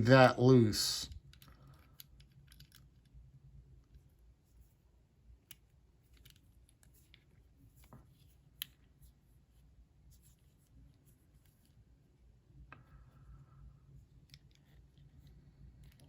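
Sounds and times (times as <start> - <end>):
lock picks clicking in lock: 1.2 - 3.1.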